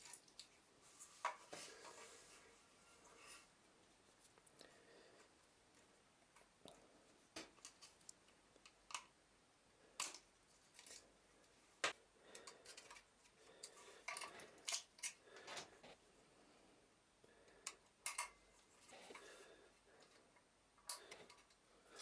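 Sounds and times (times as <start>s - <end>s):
small parts clicking and tapping: 7.4s - 9.2s, 10.0s - 11.0s, 11.8s - 16.0s, 17.5s - 18.4s, 20.0s - 21.6s.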